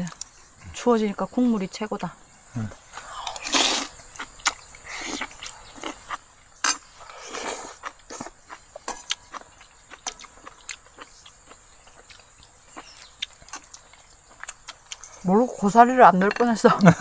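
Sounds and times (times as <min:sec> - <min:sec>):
noisy bites and slurps: 0:02.6 - 0:15.1.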